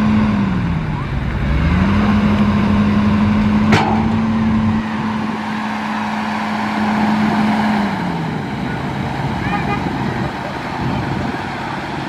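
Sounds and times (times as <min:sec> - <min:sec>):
excavator diesel engine running: 0:00.0 - 0:12.0
sharp metal clank: 0:03.7 - 0:05.6.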